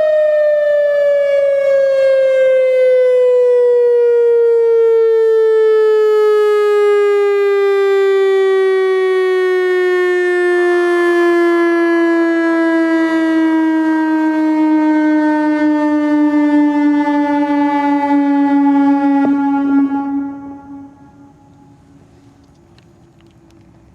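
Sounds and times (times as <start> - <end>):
tornado siren winding down: 0.0 - 22.6.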